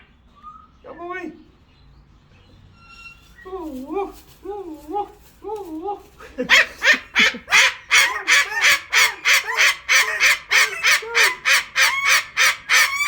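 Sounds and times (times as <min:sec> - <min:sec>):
cockatoo screeching: 0:06.5 - 0:13.0.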